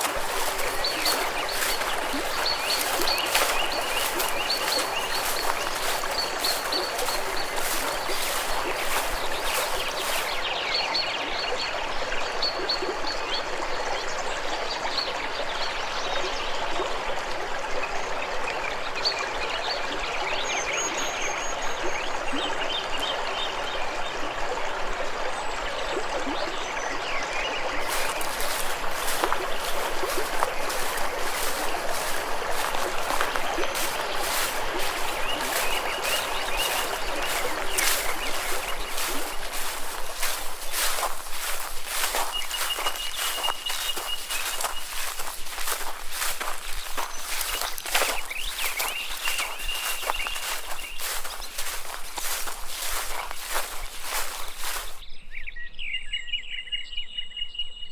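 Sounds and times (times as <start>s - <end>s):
stream water rushing: 0.0s - 12.5s, 27.6s - 55.0s.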